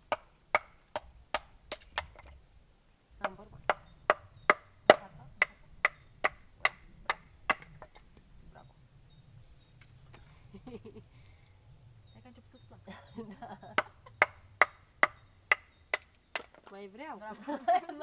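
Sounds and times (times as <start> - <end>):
hand tool chopping wood: 0.0 - 2.4, 3.2 - 8.1, 13.8 - 16.7.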